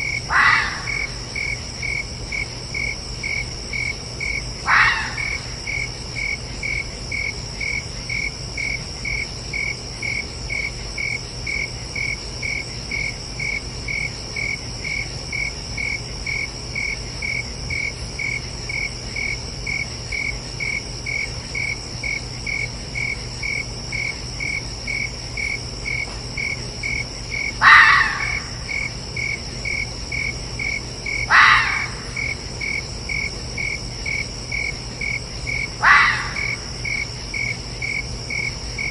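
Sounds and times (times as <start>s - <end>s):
fox calling: 0.0s - 1.3s, 4.6s - 5.8s, 27.4s - 28.9s, 31.1s - 32.4s, 35.6s - 36.8s
crickets chirping: 0.0s - 38.9s
high insect drone: 0.0s - 38.9s.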